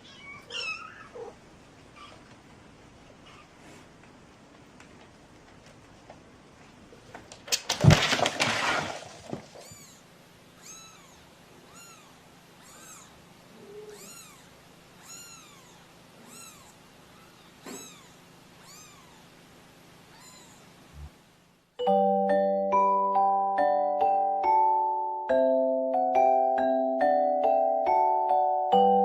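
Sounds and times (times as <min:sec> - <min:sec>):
cat meowing: 0:00.0 - 0:01.4, 0:09.6 - 0:10.0, 0:10.6 - 0:19.3, 0:20.1 - 0:20.7.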